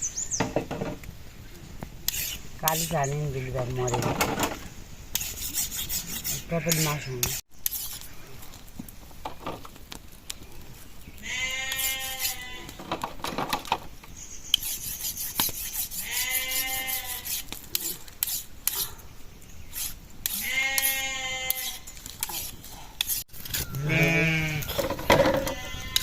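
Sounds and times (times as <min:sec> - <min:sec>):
sheep bleating: 0:11.2 - 0:12.8, 0:16.0 - 0:17.4, 0:20.4 - 0:21.8, 0:23.7 - 0:24.8, 0:25.4 - 0:26.0.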